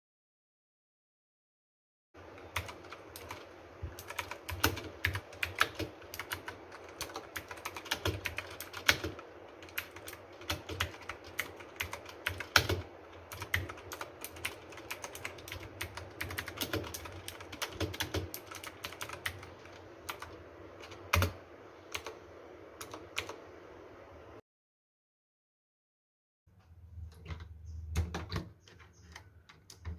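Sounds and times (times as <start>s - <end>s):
mechanical keyboard typing: 2.2s - 22.2s, 22.8s - 23.4s, 27.1s - 29.9s.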